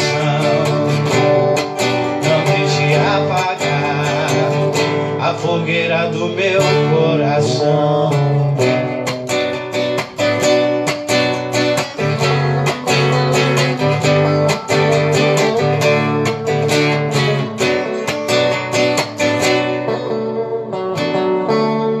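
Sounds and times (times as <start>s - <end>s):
guitar strumming: 0.0s - 22.0s
steady beat: 8.6s - 21.9s.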